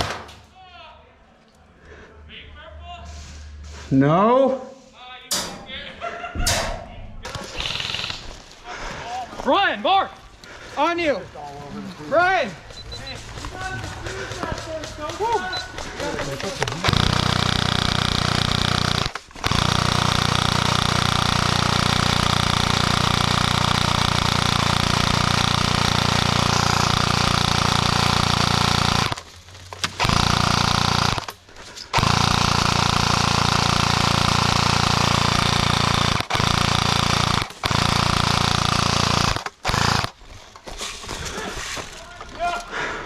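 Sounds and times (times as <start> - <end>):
airsoft gun firing bursts: 7.4 - 8.4, 12.7 - 29.2, 29.8 - 40.2.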